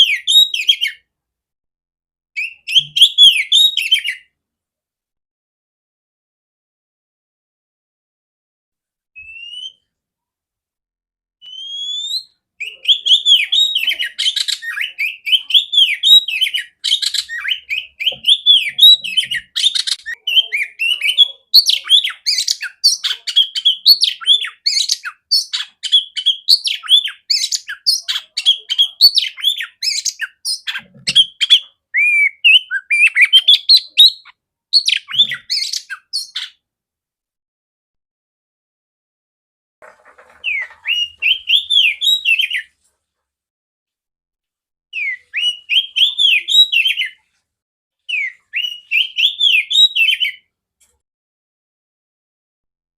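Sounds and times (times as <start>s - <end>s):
bird singing varied whistles: 2.4s - 4.2s, 9.2s - 9.8s, 11.4s - 36.6s, 40.4s - 42.7s, 45.0s - 47.2s, 48.1s - 50.4s.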